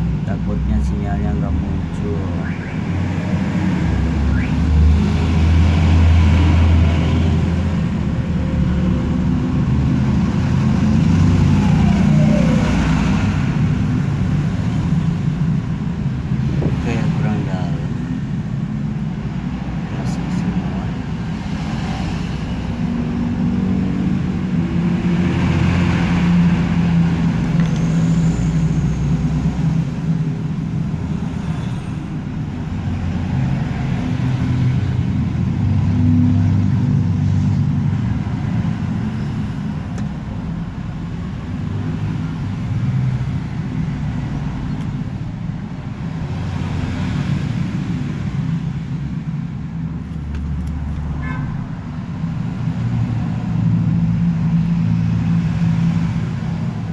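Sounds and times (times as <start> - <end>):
traffic engine rumble: 0.0 - 56.9.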